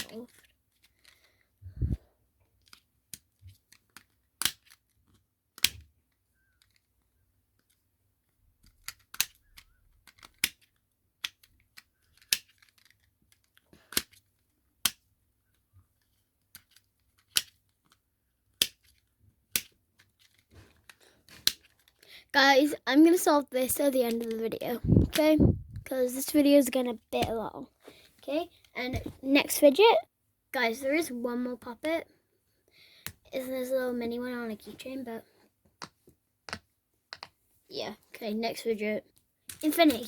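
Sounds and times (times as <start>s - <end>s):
plastic puzzle ball clicking: 2.6s - 7.8s, 8.5s - 22.0s.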